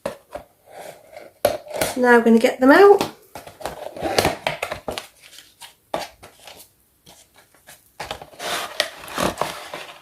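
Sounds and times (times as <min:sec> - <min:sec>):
packaging rustling: 0:03.4 - 0:10.0.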